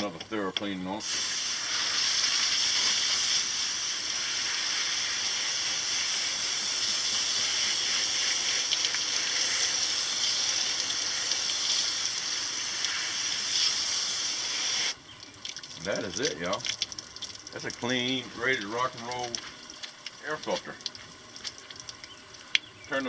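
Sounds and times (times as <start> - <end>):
garden hose spraying water: 0.0 - 23.0.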